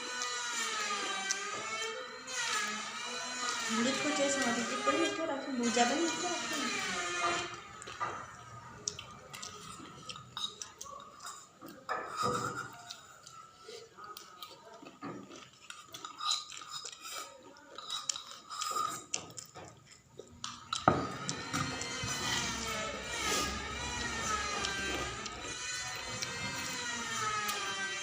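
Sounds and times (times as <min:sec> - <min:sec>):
spoon scraping a plate: 0:11.2 - 0:13.1.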